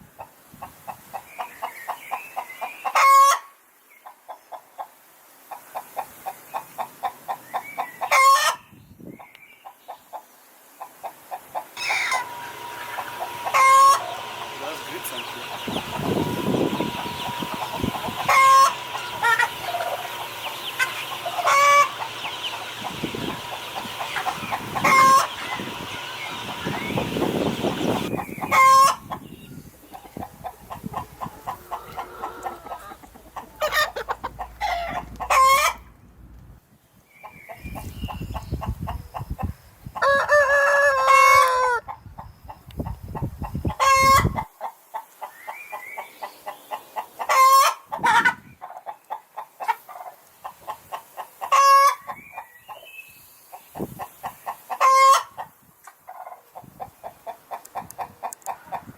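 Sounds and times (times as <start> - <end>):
chickens clucking and calling: 0.0 - 36.0, 37.1 - 58.9
steady high hum: 11.8 - 28.5.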